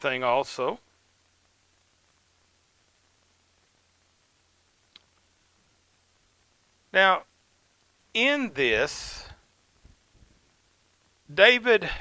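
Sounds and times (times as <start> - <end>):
faint click: 4.9 - 5.3.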